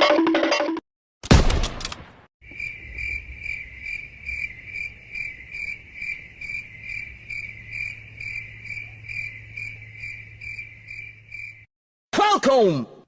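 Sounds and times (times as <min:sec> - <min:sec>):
crickets chirping: 0:02.4 - 0:11.7.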